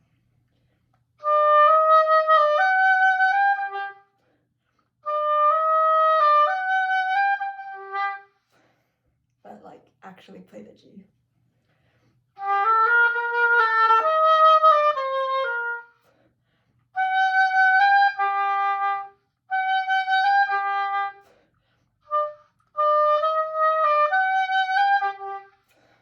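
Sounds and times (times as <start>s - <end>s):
solo oboe melody: 1.2s - 4.2s, 5.0s - 8.4s, 12.4s - 16.0s, 17.0s - 21.4s, 22.0s - 25.7s.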